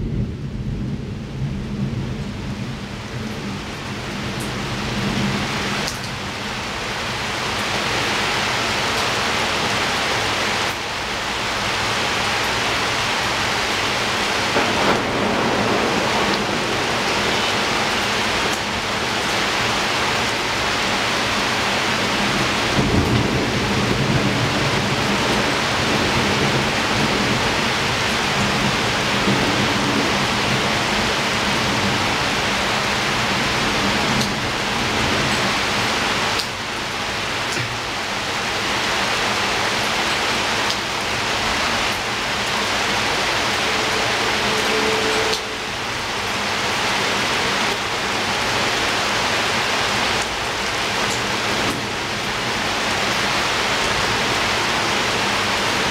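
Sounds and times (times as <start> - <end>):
thunder rumbling: 0.0 - 5.9, 12.8 - 37.0, 39.5 - 49.3
heavy rain on window: 0.0 - 55.9.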